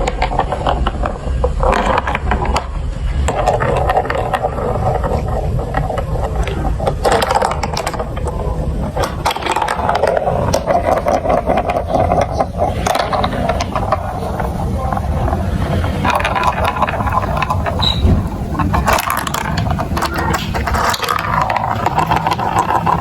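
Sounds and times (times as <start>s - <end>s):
marbles clattering through plastic run: 0.0s - 23.0s.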